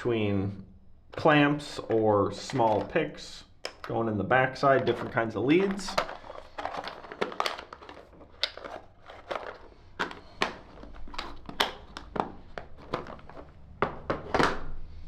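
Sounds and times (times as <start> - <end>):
tool bag rustling: 1.8 - 3.0, 4.8 - 14.1
tools clicking and knocking: 3.6 - 3.9, 4.9 - 14.5.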